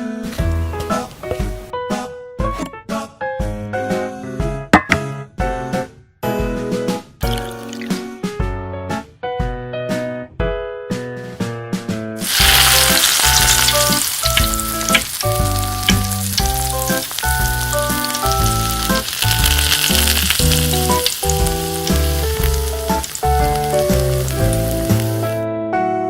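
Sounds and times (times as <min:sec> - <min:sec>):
food sizzling in hot oil: 0:07.2 - 0:08.0, 0:12.2 - 0:25.4
piano music: 0:07.2 - 0:08.3, 0:12.2 - 0:26.0.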